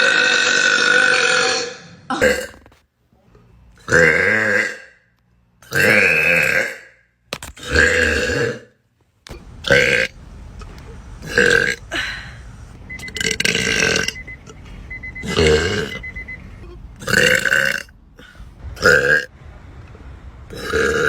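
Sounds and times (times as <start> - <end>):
woman burping loudly: 0.0 - 2.7, 3.9 - 4.9, 7.6 - 8.7, 11.3 - 12.1, 13.1 - 14.2, 15.2 - 16.0, 17.0 - 19.3, 20.5 - 21.0.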